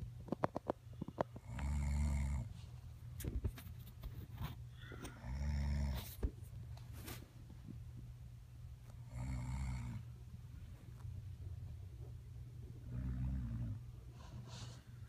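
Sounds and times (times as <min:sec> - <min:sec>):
woman snoring: 0:01.4 - 0:02.5, 0:04.8 - 0:06.0, 0:09.1 - 0:10.0.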